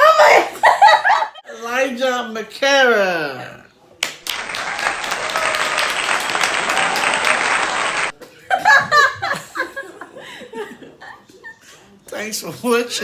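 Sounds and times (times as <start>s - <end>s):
applause: 4.0s - 8.2s
people laughing: 4.7s - 11.7s.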